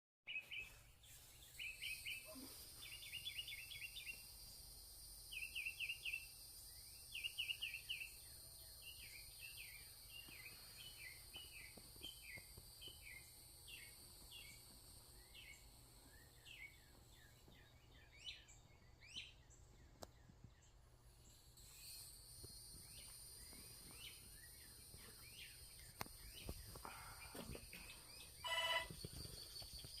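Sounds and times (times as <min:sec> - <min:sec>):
faint birdsong: 0:00.3 - 0:22.1, 0:22.8 - 0:30.0
high-pitched ringing drone: 0:21.3 - 0:30.0.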